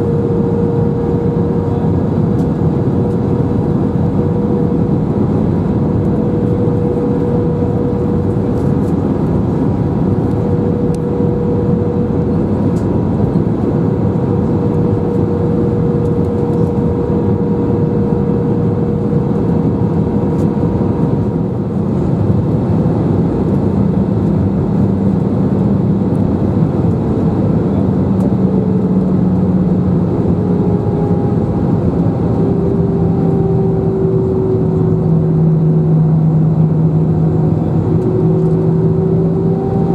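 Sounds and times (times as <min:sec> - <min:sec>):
jet engines humming: 0:00.0 - 0:39.9.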